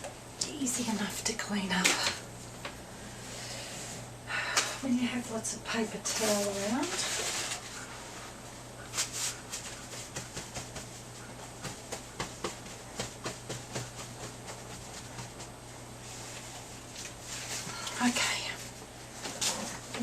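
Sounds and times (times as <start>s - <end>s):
low electrical hum: 0.0s - 20.0s
paper towels rustling: 5.7s - 20.0s.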